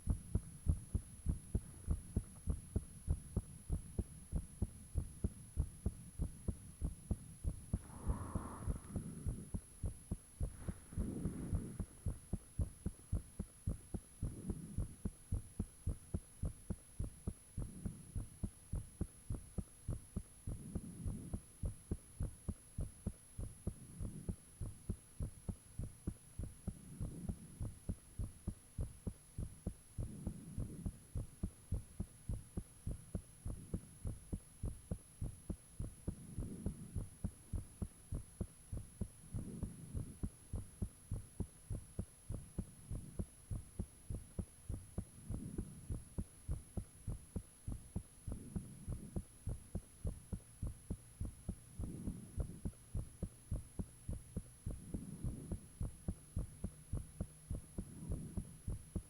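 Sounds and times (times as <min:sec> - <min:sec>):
heartbeat thumps: 0:00.0 - 0:59.0
low whooshing swell: 0:07.8 - 0:09.3.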